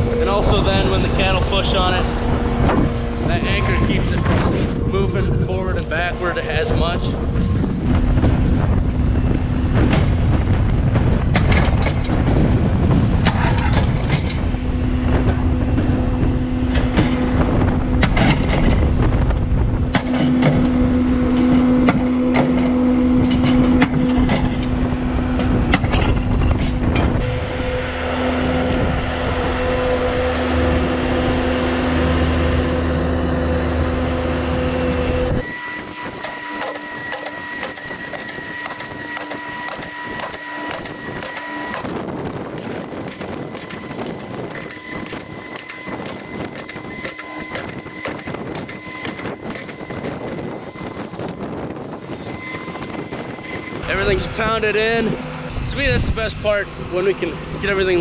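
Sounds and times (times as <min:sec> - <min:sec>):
post pounder engine running: 0:00.0 - 0:19.0, 0:26.6 - 0:53.8.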